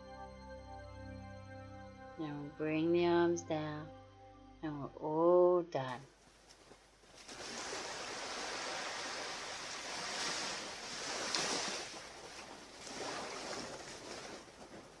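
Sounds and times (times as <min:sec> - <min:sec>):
ocean surf breaking on beach: 0:07.3 - 0:15.0.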